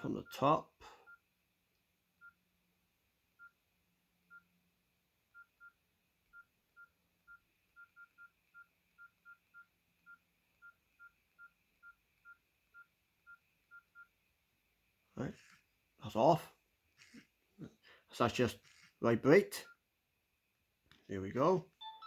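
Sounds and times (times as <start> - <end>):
faint keypad beeps: 2.2 - 2.4, 4.3 - 4.5, 5.4 - 14.1, 21.8 - 22.0.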